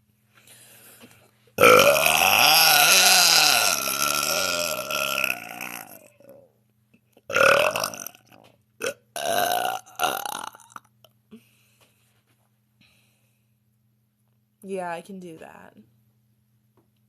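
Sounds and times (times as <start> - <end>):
woman belching: 1.6 - 6.4, 7.3 - 10.9.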